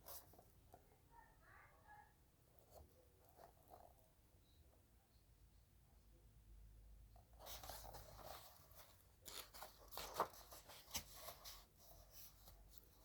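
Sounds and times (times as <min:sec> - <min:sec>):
book pages rustling: 0:07.3 - 0:13.0.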